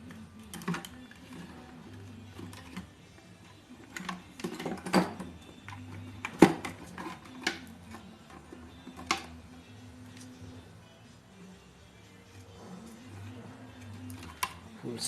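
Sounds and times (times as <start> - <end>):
tools and casing clicks and knocks: 0.0 - 1.3, 3.8 - 9.4
faint background music: 0.0 - 15.0.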